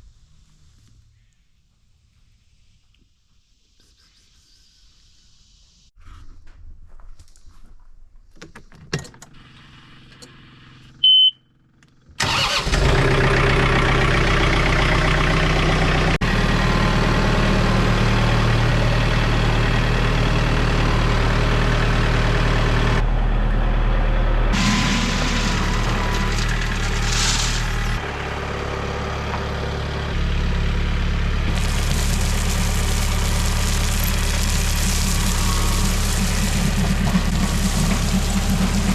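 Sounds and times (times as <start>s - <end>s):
short high beep: 11.0s - 11.4s
engine idling: 12.2s - 38.9s.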